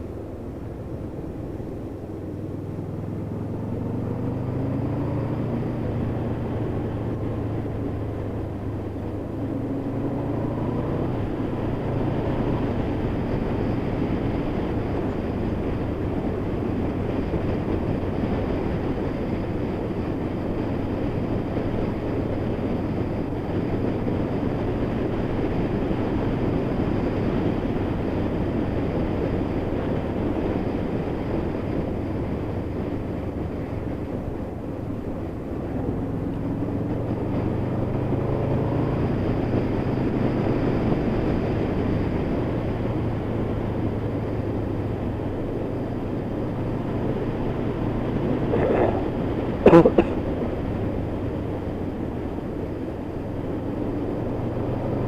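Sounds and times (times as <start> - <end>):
wind and road noise: 0.0 - 55.0
motorcycle engine accelerating: 2.3 - 55.0.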